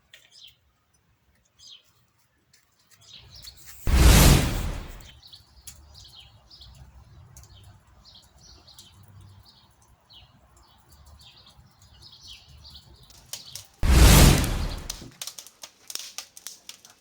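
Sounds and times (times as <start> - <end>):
loud burst of noise: 3.9 - 5.1, 13.8 - 15.1.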